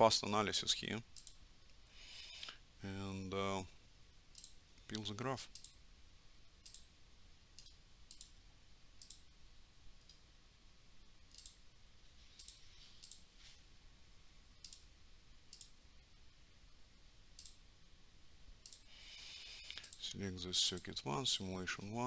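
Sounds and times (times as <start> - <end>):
computer mouse clicks: 1.2 - 2.6, 4.3 - 4.6, 5.5 - 5.8, 6.6 - 6.9, 7.6 - 8.4, 9.0 - 9.3, 11.3 - 11.6, 12.3 - 13.3, 14.6 - 14.9, 15.5 - 15.8, 17.4 - 17.6, 18.6 - 20.1.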